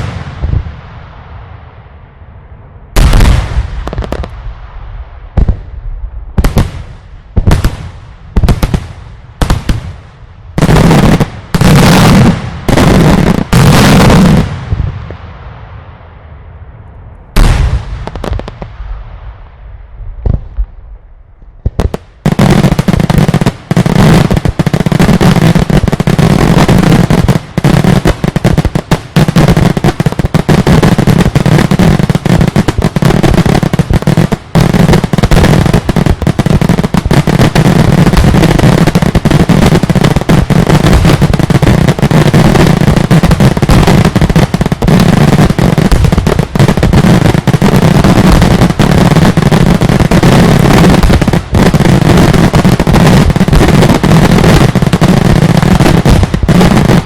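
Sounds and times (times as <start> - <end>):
barrage of rapid firework explosions: 0.0 - 1.4, 3.0 - 15.8, 17.4 - 57.0
loud firework bang: 3.0 - 4.6, 17.4 - 19.5.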